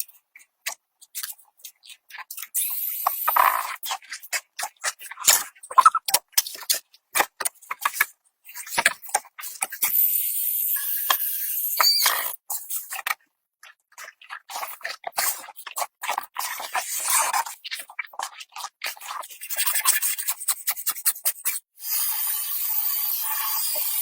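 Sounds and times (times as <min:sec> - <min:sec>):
rubbing and scraping strokes: 0:19.0 - 0:21.7.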